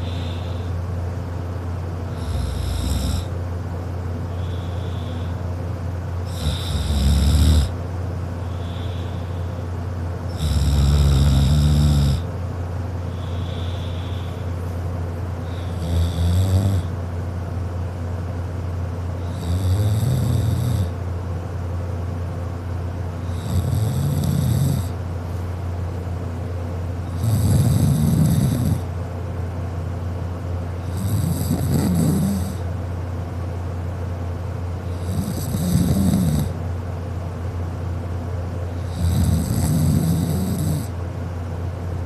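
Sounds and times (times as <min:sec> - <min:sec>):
person snoring loudly: 0:02.1 - 0:03.3, 0:06.3 - 0:07.8, 0:10.3 - 0:12.3, 0:15.4 - 0:16.9, 0:19.2 - 0:21.0, 0:23.2 - 0:25.0, 0:27.1 - 0:28.9, 0:30.8 - 0:32.6, 0:34.9 - 0:36.6, 0:38.8 - 0:40.9.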